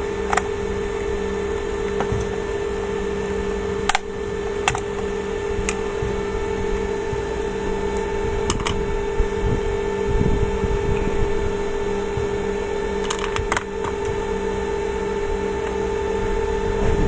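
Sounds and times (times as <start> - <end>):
tools and plastic parts clicking: 0.0 - 2.3, 3.9 - 6.2, 8.5 - 8.8, 13.0 - 14.2
electrical hum: 0.0 - 17.0.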